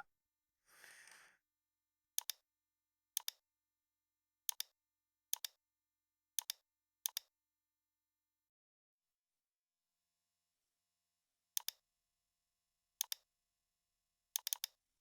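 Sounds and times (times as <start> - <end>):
computer mouse clicking: 5.4 - 5.6, 6.4 - 7.3, 14.4 - 14.8.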